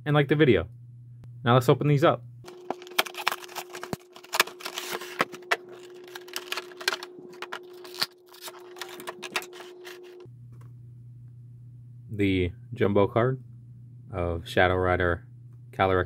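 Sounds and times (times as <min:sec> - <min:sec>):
faint steady hum: 0:00.0 - 0:16.0
cardboard and wrapping rustling: 0:02.5 - 0:10.2.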